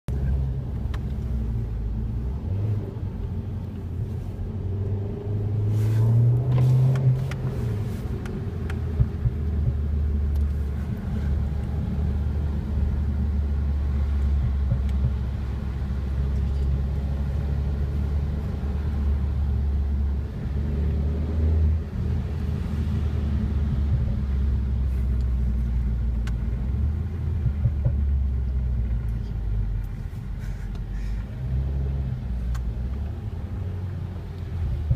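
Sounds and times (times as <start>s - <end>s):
car engine droning and revving: 0.1s - 34.9s
exhaust cracks: 5.7s - 16.9s.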